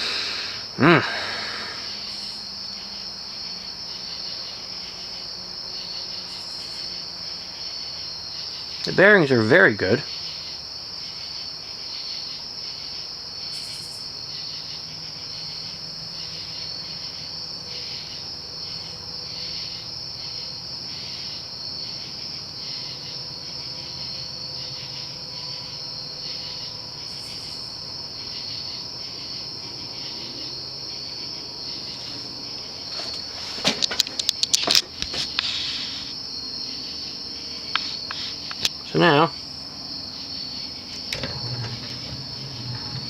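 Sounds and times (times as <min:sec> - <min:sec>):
crickets chirring: 0:00.0 - 0:43.0
ceiling fan motor hum: 0:39.5 - 0:43.0.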